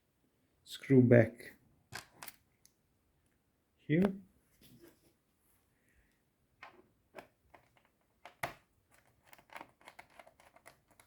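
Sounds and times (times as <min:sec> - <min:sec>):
screwdriver and plastic parts clicking: 0:06.6 - 0:11.0.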